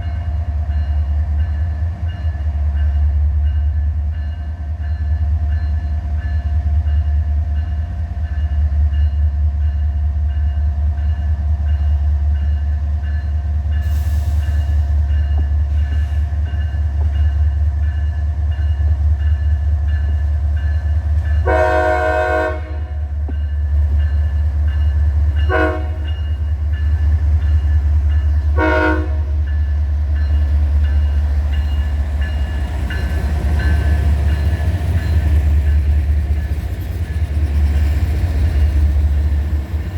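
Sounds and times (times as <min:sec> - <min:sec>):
low rumble of moving train: 0:00.0 - 0:39.9
locomotive horn: 0:21.4 - 0:23.2, 0:25.5 - 0:26.2, 0:28.6 - 0:29.4.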